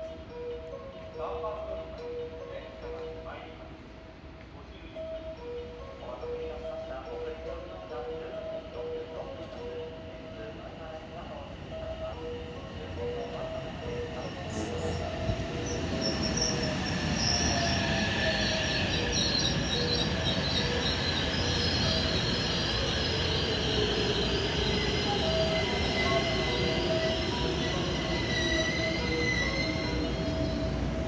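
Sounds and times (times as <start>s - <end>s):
train rolling rumble: 8.4s - 31.0s.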